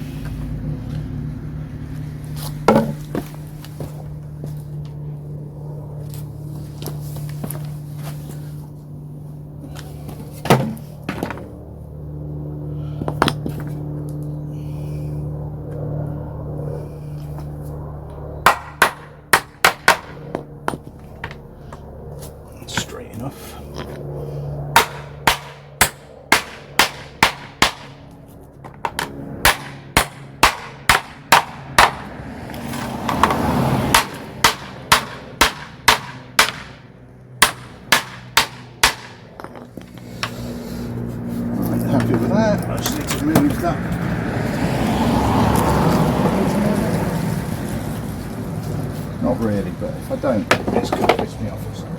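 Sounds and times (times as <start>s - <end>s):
hammer striking nails into wood: 18.4s - 20.8s, 24.7s - 27.9s, 28.8s - 32.1s, 33.1s - 36.7s, 37.4s - 39.2s
hammer driving nails into wood: 34.0s - 36.7s, 37.4s - 39.2s.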